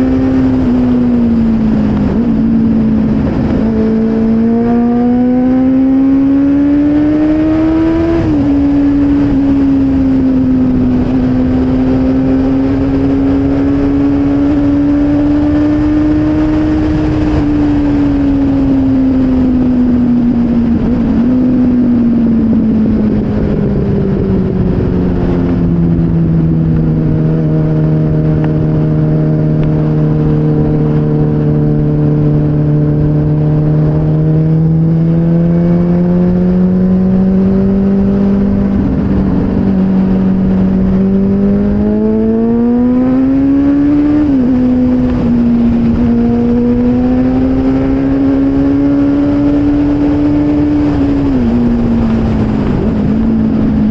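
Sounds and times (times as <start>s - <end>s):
motorcycle engine revving: 0.0s - 53.9s
wind and road noise: 0.0s - 53.9s.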